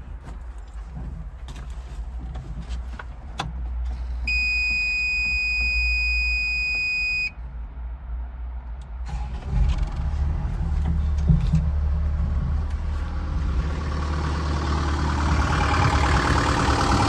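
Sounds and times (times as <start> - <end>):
excavator engine rumble: 7.4 - 17.0.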